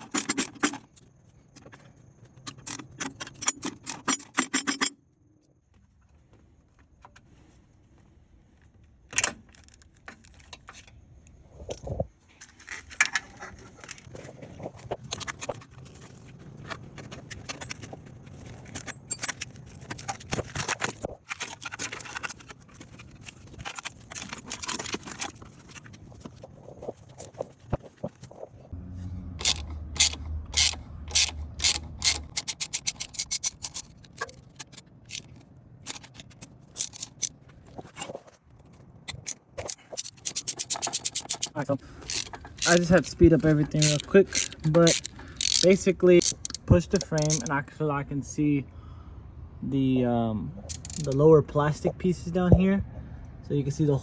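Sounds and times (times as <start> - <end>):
metal clanks and scrapes: 0.0 - 1.0, 2.4 - 5.0, 29.4 - 38.4, 39.1 - 47.5, 50.7 - 51.2
ratchet wrench clicking: 29.4 - 37.3, 39.1 - 47.5, 50.7 - 51.2.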